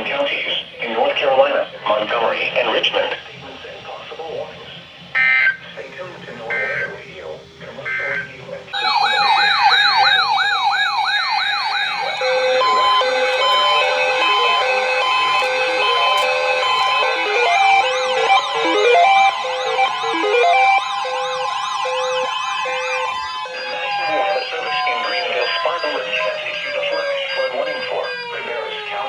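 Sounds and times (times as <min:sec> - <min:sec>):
sweeping siren yelps: 0:05.0 - 0:05.7, 0:07.8 - 0:29.0.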